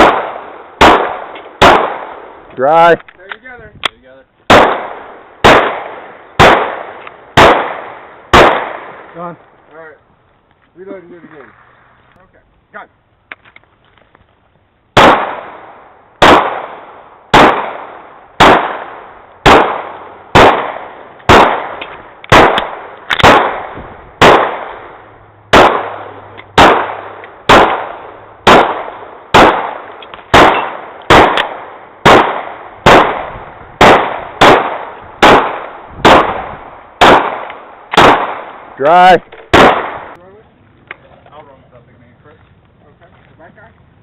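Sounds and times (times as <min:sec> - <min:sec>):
handgun shots echoing: 0:00.0 - 0:02.3, 0:03.0 - 0:09.1, 0:15.0 - 0:38.6, 0:39.3 - 0:40.2.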